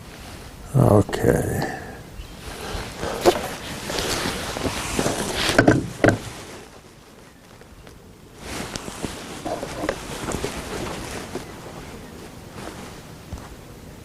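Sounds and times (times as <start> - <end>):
small clicks and rustles: 2.4 - 13.6
sharp handling knocks: 3.0 - 6.4.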